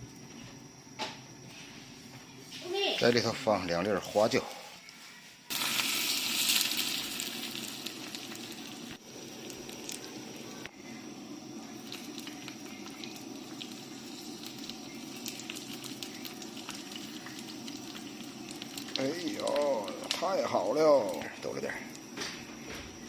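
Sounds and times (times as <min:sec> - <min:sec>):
hot oil sizzling and crackling: 0:05.5 - 0:23.0.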